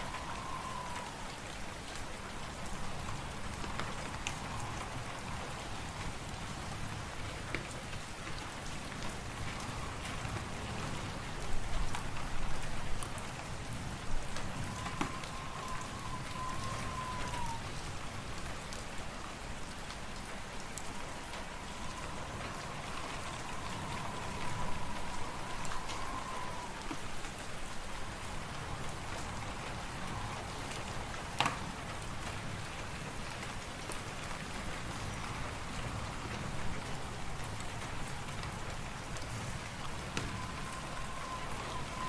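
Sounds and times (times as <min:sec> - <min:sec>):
wind whistling: 0:00.0 - 0:08.0, 0:08.6 - 0:33.2, 0:34.5 - 0:42.0
wind hissing: 0:13.5 - 0:18.3, 0:20.4 - 0:32.6, 0:38.9 - 0:42.0
wood fire crackling: 0:19.9 - 0:27.2.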